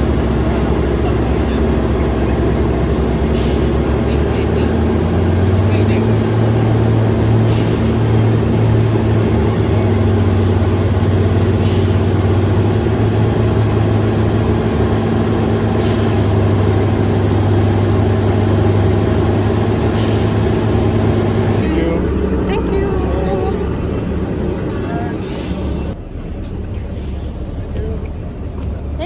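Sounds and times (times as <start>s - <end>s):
heavy vehicle engine humming: 0.0s - 29.0s.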